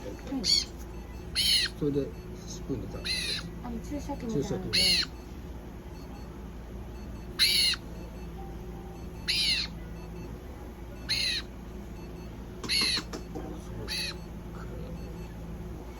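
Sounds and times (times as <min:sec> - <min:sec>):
parrot shrill calling: 0:00.4 - 0:00.7, 0:01.3 - 0:01.8, 0:03.0 - 0:03.5, 0:04.6 - 0:05.2, 0:07.4 - 0:07.9, 0:09.2 - 0:09.8, 0:11.1 - 0:11.5, 0:12.7 - 0:13.1, 0:13.9 - 0:14.3.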